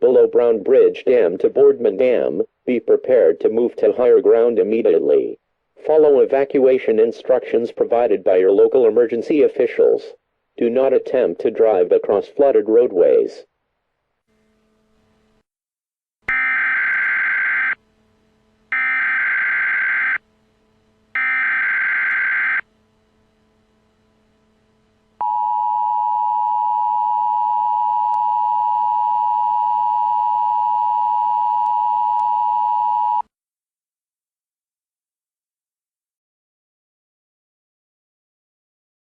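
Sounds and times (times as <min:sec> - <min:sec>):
screeching digital data bursts: 0:18.7 - 0:20.2, 0:21.2 - 0:22.6.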